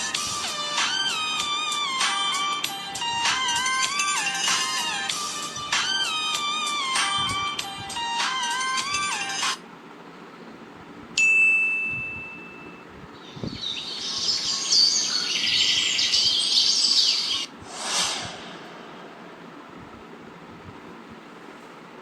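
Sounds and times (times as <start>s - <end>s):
bright ding: 11.2s - 12.8s
dense high bird chirping: 13.1s - 17.6s
short whoosh: 17.6s - 19.4s.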